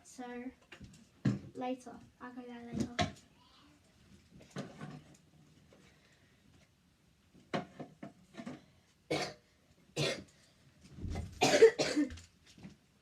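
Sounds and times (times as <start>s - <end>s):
person coughing: 9.1s - 9.4s, 10.0s - 10.3s, 11.4s - 12.2s.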